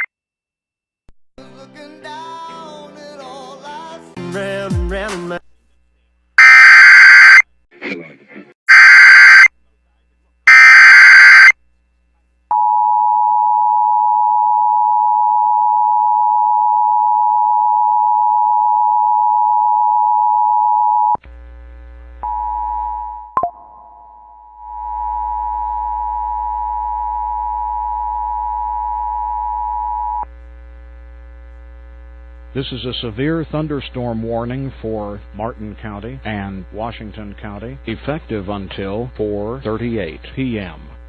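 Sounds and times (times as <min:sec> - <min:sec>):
screeching data burst: 0:06.4 - 0:07.4, 0:08.7 - 0:09.5, 0:10.5 - 0:11.5
mains hum: 0:07.4 - 0:41.0.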